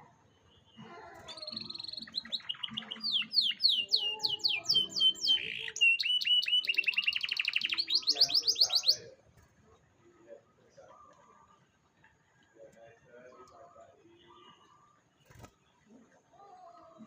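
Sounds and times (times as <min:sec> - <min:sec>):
canary singing: 0:00.6 - 0:09.1.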